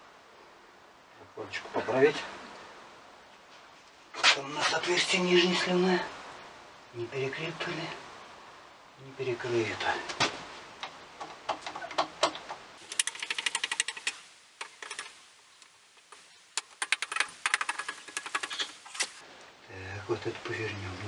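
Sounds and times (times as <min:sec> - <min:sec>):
rapid mechanical clicking: 0:11.5 - 0:15.1, 0:16.6 - 0:19.1.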